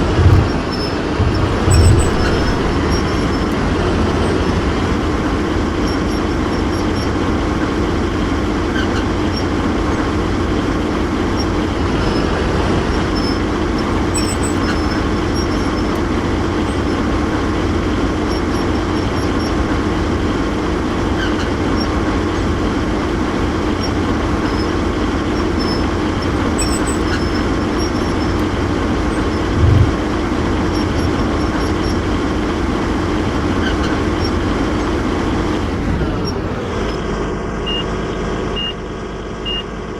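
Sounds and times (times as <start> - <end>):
short low thump: 0.0 - 4.2, 29.5 - 30.1
heavy vehicle engine rumbling: 0.0 - 39.9.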